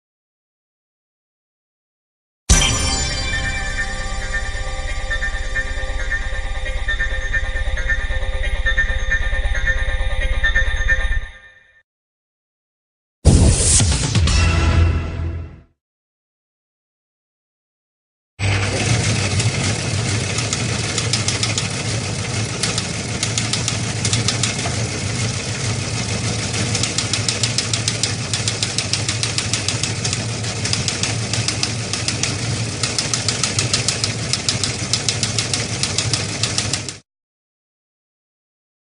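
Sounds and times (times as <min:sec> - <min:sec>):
engine running with fast ticking: 0:18.4 - 0:37.0.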